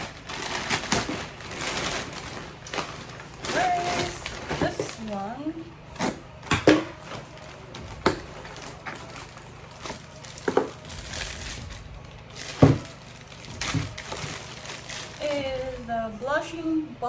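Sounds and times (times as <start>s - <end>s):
shopping bags crinkling: 0.0s - 16.4s
products knocking and clacking: 6.4s - 11.3s, 12.4s - 14.5s.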